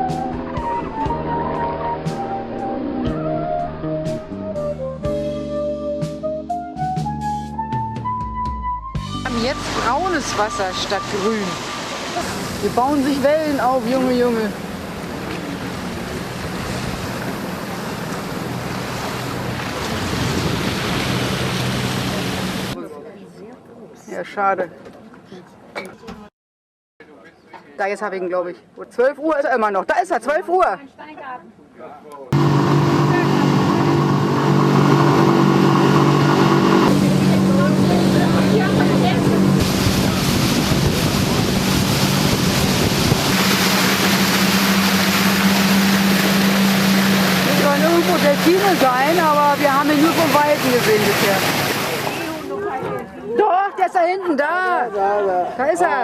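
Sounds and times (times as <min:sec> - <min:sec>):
boat engine humming: 0:00.0 - 0:06.0, 0:08.9 - 0:22.8, 0:32.4 - 0:53.2
water rushing and splashing: 0:09.1 - 0:22.8, 0:32.4 - 0:52.8
wind buffeting microphone: 0:12.2 - 0:22.8, 0:32.4 - 0:51.1.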